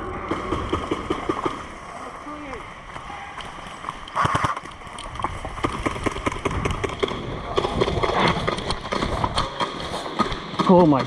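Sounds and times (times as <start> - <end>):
airsoft guns firing: 0.0 - 1.8, 4.2 - 4.7, 5.4 - 11.0.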